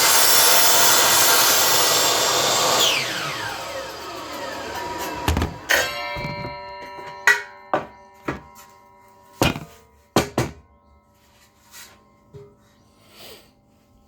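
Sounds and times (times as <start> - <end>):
miter saw winding down: 0.0 - 6.0
aluminium post knocking and ringing: 5.0 - 11.1.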